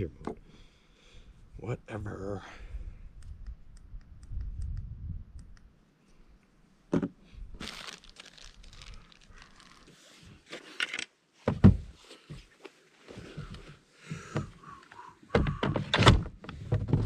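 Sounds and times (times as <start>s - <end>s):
crinkling and rustling: 7.6s - 13.8s.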